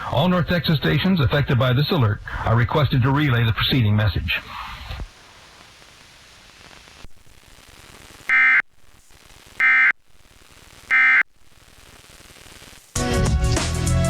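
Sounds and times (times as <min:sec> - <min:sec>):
buzzy digital tone bursts: 0:08.2 - 0:08.6, 0:10.7 - 0:11.2.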